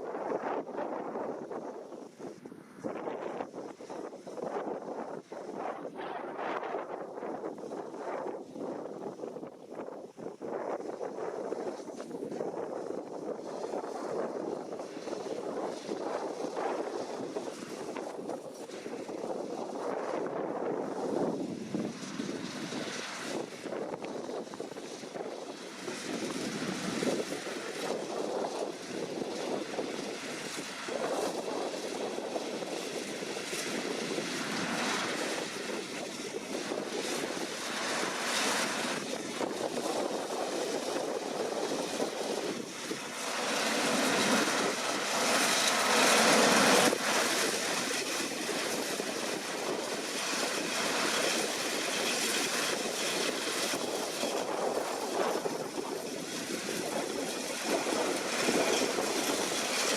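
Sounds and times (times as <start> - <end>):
combine harvester engine and machinery: 0.1 - 59.9.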